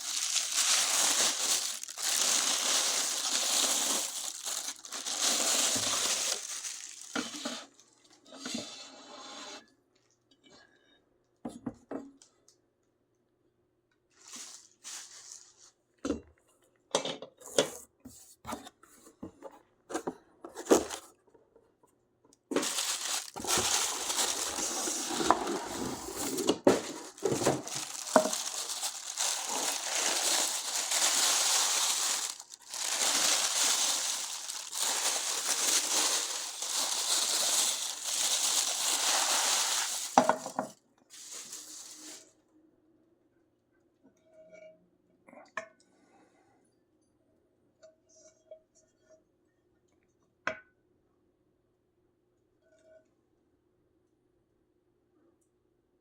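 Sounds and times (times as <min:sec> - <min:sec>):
packaging rustling and crinkling: 0:00.0 - 0:07.8, 0:14.2 - 0:15.8, 0:22.5 - 0:42.3.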